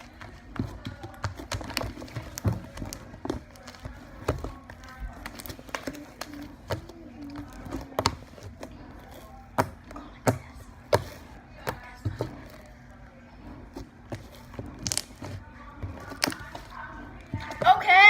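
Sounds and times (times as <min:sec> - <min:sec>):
slime squished by hand: 0:13.5 - 0:17.6.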